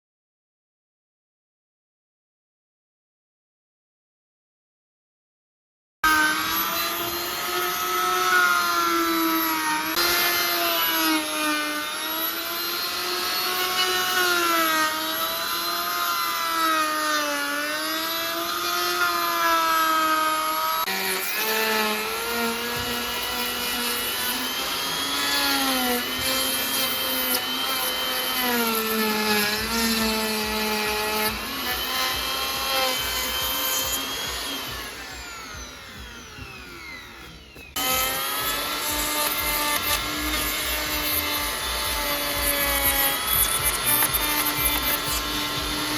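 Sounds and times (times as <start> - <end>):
power tool motor cutting wood: 6.0 - 45.9.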